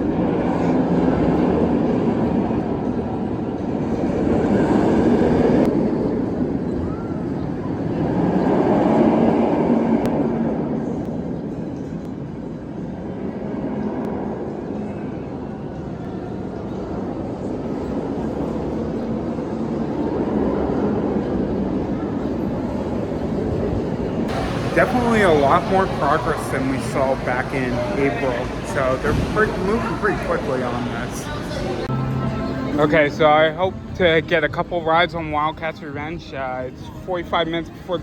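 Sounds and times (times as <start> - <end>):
faint crowd voices: 0.0 - 38.0
ride train rumbling on track: 7.2 - 33.9.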